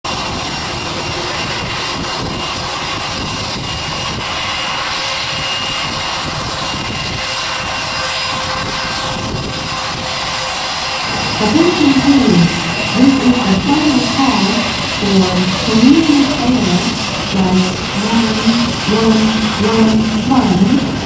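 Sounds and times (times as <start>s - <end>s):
jet engines running: 0.1s - 21.0s.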